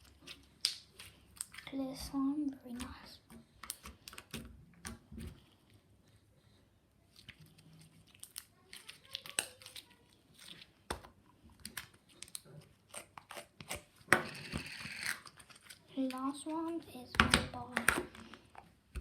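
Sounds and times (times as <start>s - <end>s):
slime squished by hand: 7.1s - 10.7s.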